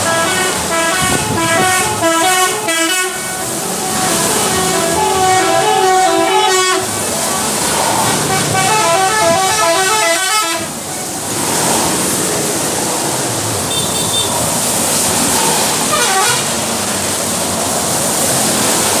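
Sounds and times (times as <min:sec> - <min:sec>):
bus musical horn melody: 0:00.0 - 0:10.9, 0:13.7 - 0:14.5, 0:15.9 - 0:16.7
road noise: 0:00.0 - 0:19.0.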